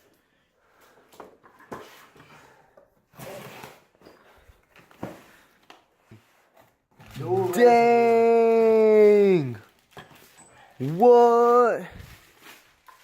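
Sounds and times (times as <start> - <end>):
cardboard packaging rustling: 6.9 - 13.0.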